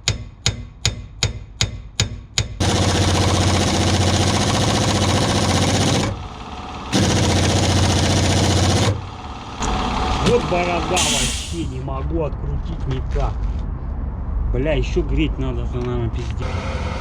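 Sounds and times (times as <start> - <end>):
impact wrench hammering: 0.0 - 9.8.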